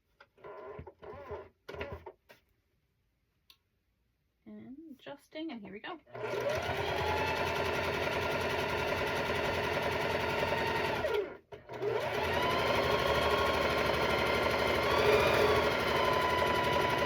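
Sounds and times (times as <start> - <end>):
sewing machine running: 6.1 - 17.0.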